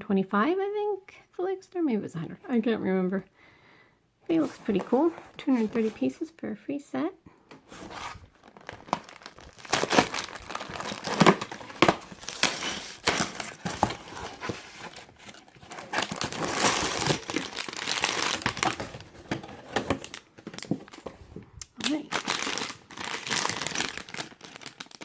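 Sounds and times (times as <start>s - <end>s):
cardboard box rustling: 4.3s - 6.1s, 7.6s - 21.5s
plastic bags crinkling: 4.3s - 6.1s, 7.7s - 25.0s
packaging tearing: 7.7s - 21.1s, 21.8s - 25.0s.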